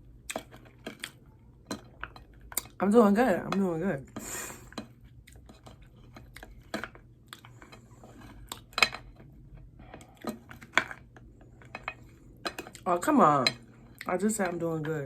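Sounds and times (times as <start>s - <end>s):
chewing and lip-smacking: 4.7s - 12.9s.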